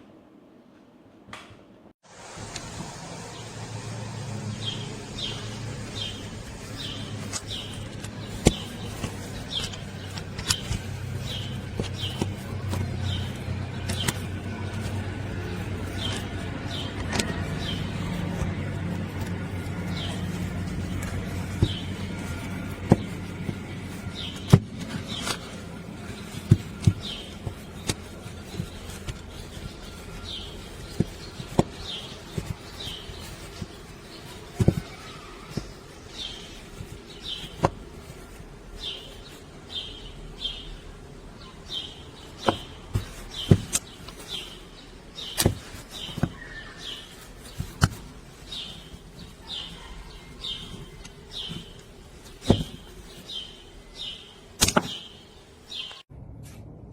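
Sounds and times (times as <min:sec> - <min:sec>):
sharp clicks and knocks: 0:06.3 - 0:38.4, 0:42.4 - 0:44.5, 0:54.6 - 0:55.0.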